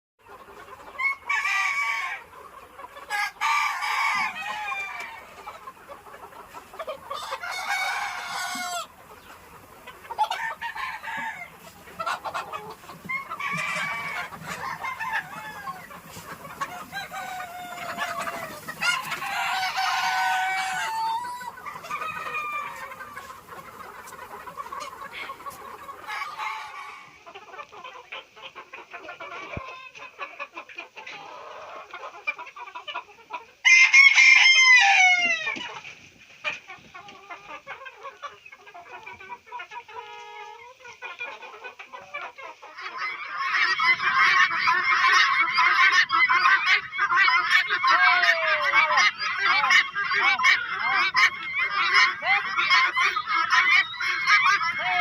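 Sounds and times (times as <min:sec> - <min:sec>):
chickens clucking: 0:00.2 - 0:55.0
roosters crowing: 0:00.8 - 0:02.3, 0:03.0 - 0:27.2, 0:33.6 - 0:35.8, 0:43.0 - 0:55.0.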